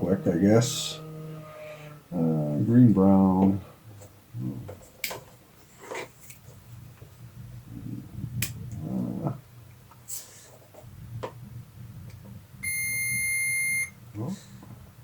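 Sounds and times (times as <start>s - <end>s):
multimeter continuity beep: 12.6s - 14.0s.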